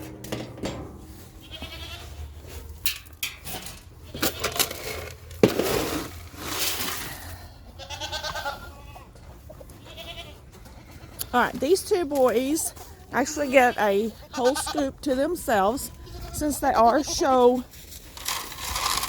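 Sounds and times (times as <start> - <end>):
goats bleating: 1.4 - 2.4, 7.4 - 11.4, 13.2 - 17.4
feed being scooped: 4.2 - 7.4, 17.7 - 19.0.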